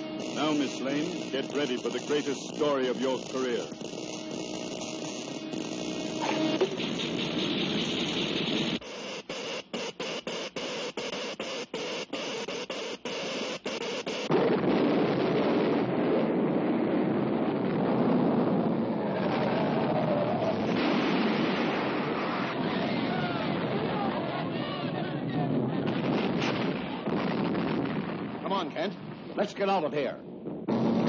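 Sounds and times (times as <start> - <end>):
loud steady rumbling: 0.0 - 8.9, 14.2 - 31.0
harsh electrical crackling: 0.0 - 16.5, 25.8 - 31.0.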